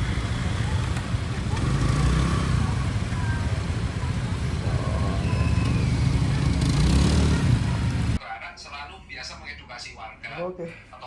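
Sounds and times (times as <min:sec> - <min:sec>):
vehicle rumble with hiss: 0:00.0 - 0:08.2.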